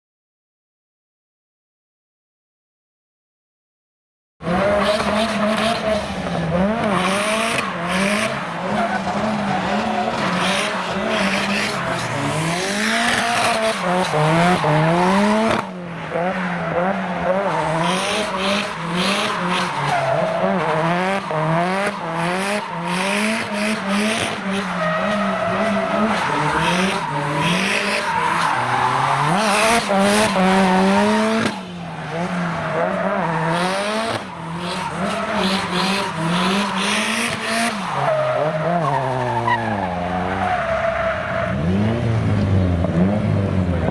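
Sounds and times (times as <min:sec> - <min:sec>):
car engine revving: 0:04.4 - 0:43.9.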